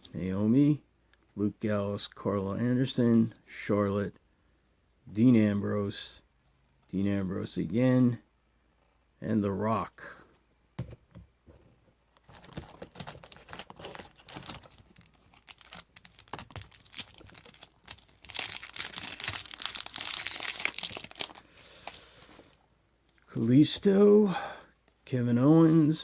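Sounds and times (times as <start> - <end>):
plastic wrapper tearing and crinkling: 12.3 - 22.5.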